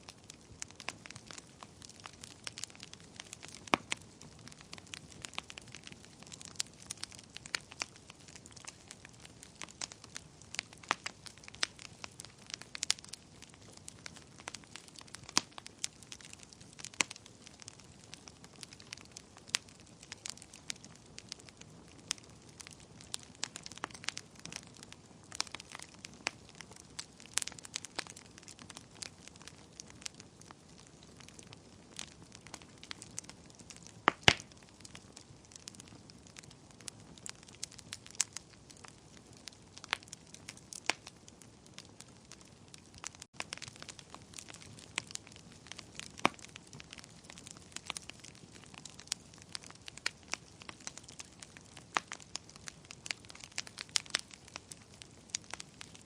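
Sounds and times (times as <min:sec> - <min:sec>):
low fire hiss: 0:00.0 - 0:56.0
wood fire crackling: 0:00.0 - 0:56.0.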